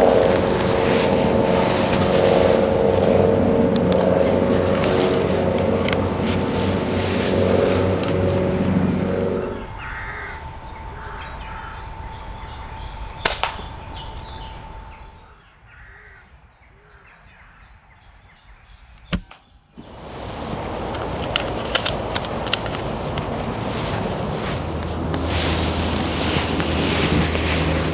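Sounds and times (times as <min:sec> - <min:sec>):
wind noise: 0:00.0 - 0:14.9, 0:19.8 - 0:27.9
songbird singing: 0:00.0 - 0:19.2, 0:19.8 - 0:27.9
air rifle shots: 0:13.2 - 0:13.7.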